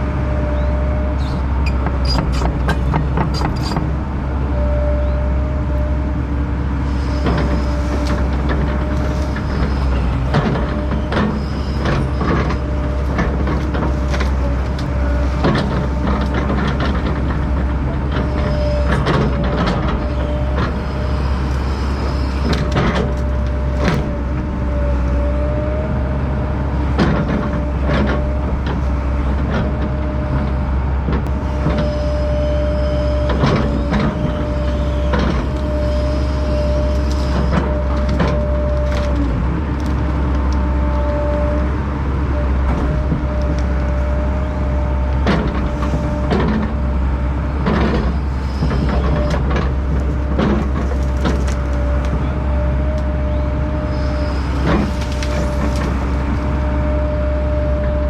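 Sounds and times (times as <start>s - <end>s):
heavy machinery droning: 0.0s - 58.0s
wood cracking and breaking: 50.0s - 52.2s, 54.6s - 56.4s.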